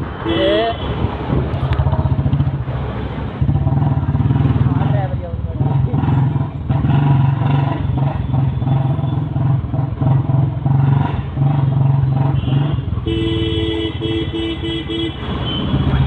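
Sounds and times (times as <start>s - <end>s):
motorcycle engine running: 1.6s - 13.8s
vehicle horn honking: 12.4s - 16.0s.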